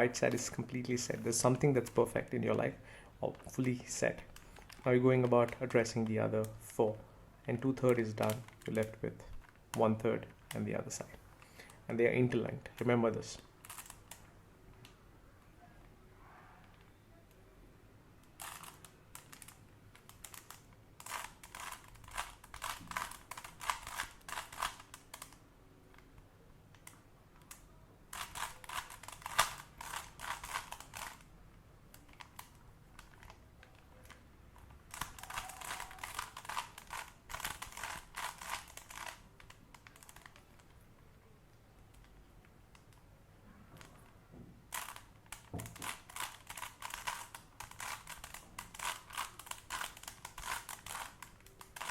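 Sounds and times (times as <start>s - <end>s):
puzzle cube layers clicking: 34.9s - 40.7s, 44.7s - 51.9s.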